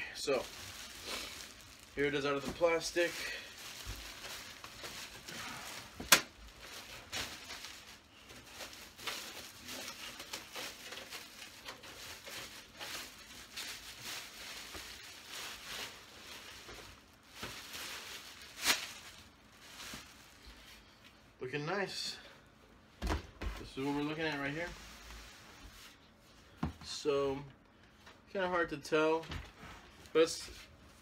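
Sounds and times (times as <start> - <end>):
plastic wrapping crinkling: 0.0 - 21.0.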